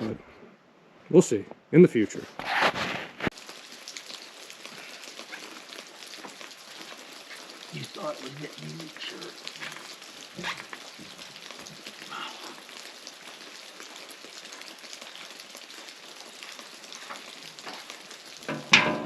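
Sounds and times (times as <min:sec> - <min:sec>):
background hiss: 0:00.0 - 0:19.0
faint ticks and knocks: 0:18.5 - 0:19.0.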